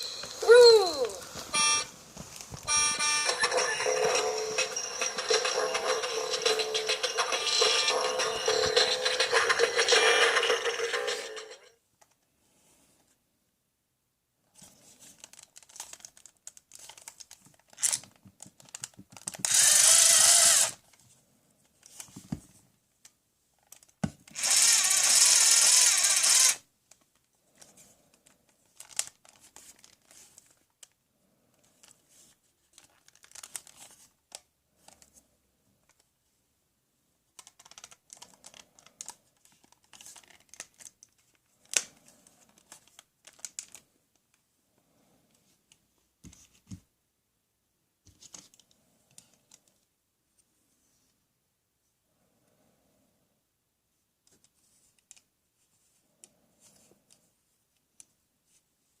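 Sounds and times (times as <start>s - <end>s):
toy power tool whirring: 0.0s - 1.8s, 2.7s - 11.5s, 19.4s - 20.8s, 24.3s - 26.6s
plastic parts clicking and rattling: 15.0s - 21.0s, 23.0s - 31.0s, 32.6s - 35.2s, 37.3s - 44.4s.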